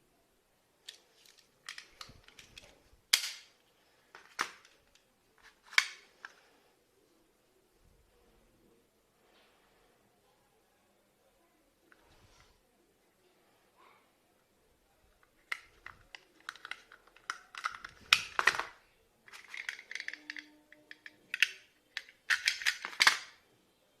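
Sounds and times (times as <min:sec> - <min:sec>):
toy cap guns clicking and snapping: 0:03.1 - 0:03.5, 0:15.5 - 0:23.4.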